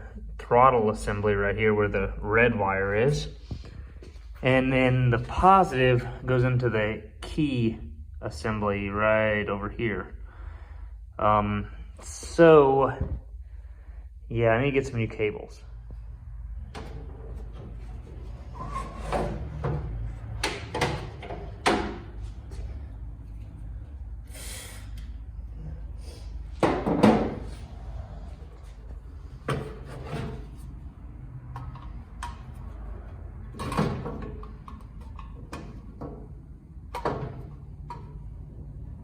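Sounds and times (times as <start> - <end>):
objects knocking and rattling: 26.6 - 27.6, 33.4 - 38.4.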